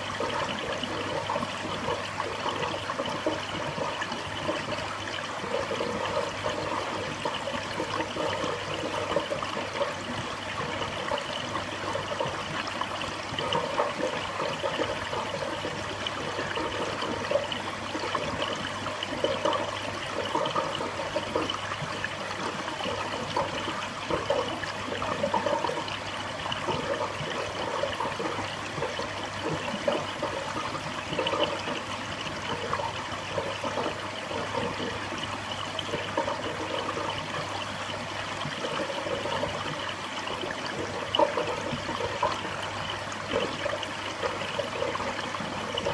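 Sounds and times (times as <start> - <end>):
water trickling and splashing: 0.0 - 45.9.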